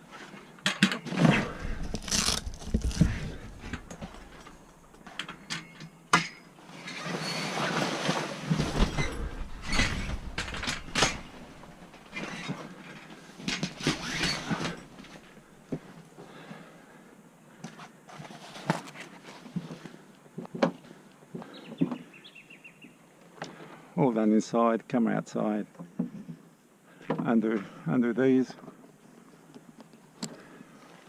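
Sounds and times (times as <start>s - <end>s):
scraping and rustling canvas: 1.1s - 4.7s, 6.7s - 15.4s, 17.8s - 19.7s.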